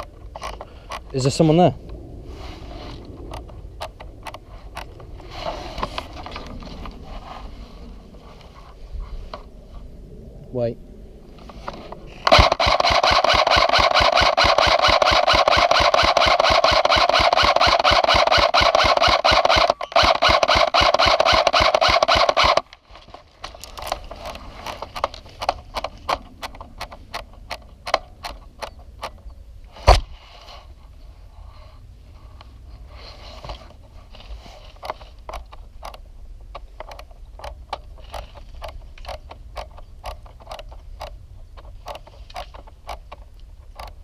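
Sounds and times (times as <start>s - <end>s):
airsoft gun full-auto rattle: 12.2s - 29.2s, 34.6s - 44.0s.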